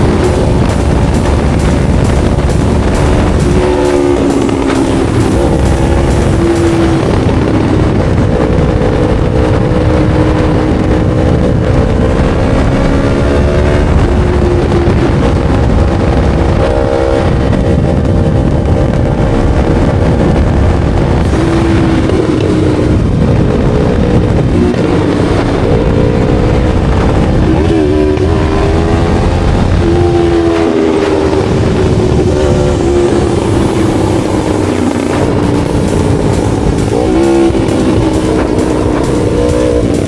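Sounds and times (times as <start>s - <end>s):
motorcycle engine cruising: 0.0s - 40.0s
wind rushing: 0.0s - 40.0s.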